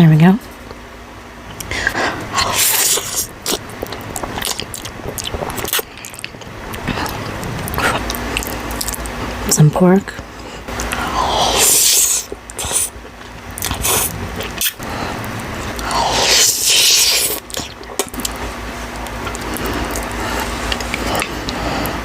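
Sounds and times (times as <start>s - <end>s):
chewing and lip smacks: 1.5s - 9.2s, 10.7s - 22.0s
wet noodle slurps: 1.8s - 9.0s, 10.9s - 12.9s, 13.6s - 14.8s, 15.7s - 18.1s.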